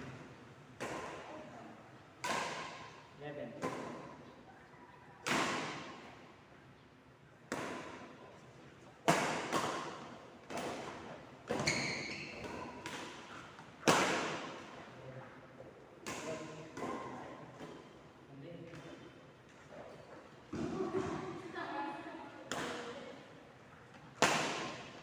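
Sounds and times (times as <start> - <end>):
racquet hitting ball echoing: 0.0 - 1.4, 2.2 - 4.2, 5.2 - 6.1, 7.4 - 8.2, 9.0 - 14.9, 22.5 - 23.3, 24.1 - 25.0
shoe squeak: 11.5 - 12.8.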